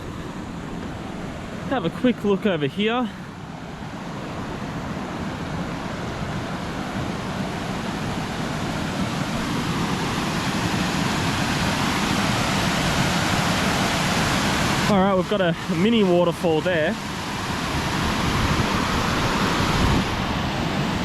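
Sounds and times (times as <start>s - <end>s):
small waterfall rushing: 0.0s - 21.0s.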